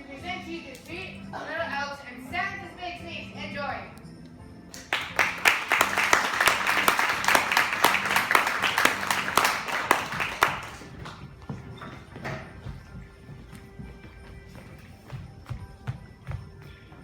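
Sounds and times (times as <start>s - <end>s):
audience applauding: 4.8s - 11.2s.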